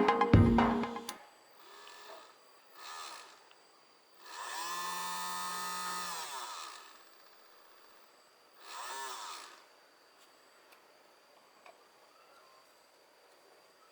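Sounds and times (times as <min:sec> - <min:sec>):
small electric motor whining: 0:01.7 - 0:03.6, 0:04.2 - 0:10.1.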